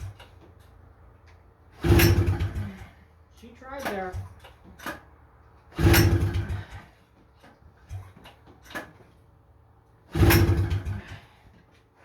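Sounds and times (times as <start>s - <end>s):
engine cranking with pull-start: 1.7s - 3.1s, 3.7s - 9.2s, 10.0s - 11.6s.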